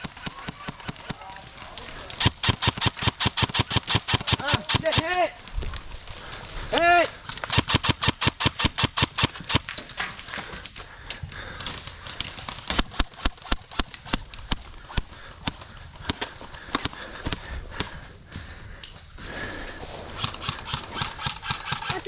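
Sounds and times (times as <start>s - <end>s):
airsoft guns firing: 0.0s - 5.5s, 7.2s - 10.3s, 12.3s - 17.0s, 20.1s - 22.0s.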